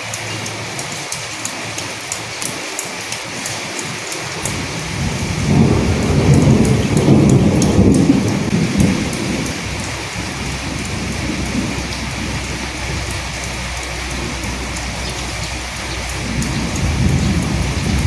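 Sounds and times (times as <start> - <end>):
raindrops ticking: 0.0 - 18.0
steady rain: 0.0 - 18.0
thunder rumbling: 4.3 - 18.0.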